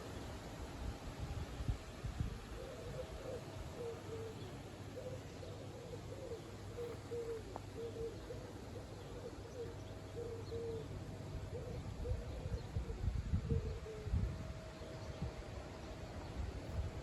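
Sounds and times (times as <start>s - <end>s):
wind gusting against microphone: 0.0s - 5.0s, 10.9s - 17.0s.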